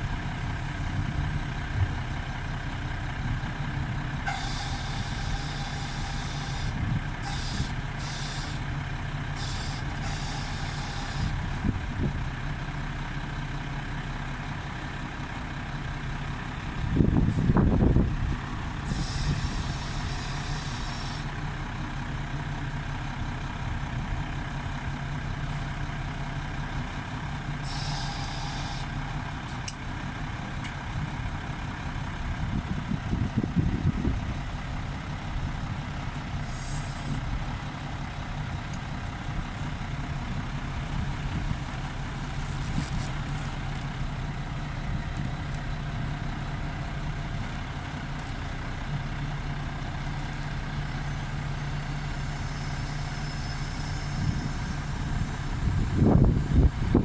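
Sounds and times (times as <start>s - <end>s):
heavy diesel engine running: 0.0s - 57.0s
short air hisses: 4.3s - 8.6s, 9.4s - 11.4s, 18.8s - 21.3s, 27.6s - 28.9s, 36.4s - 37.2s, 51.0s - 56.9s.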